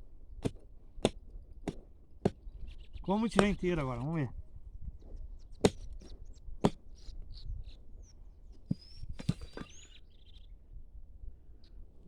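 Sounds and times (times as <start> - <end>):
faint bird chirps: 5.2 - 10.7, 11.5 - 11.8.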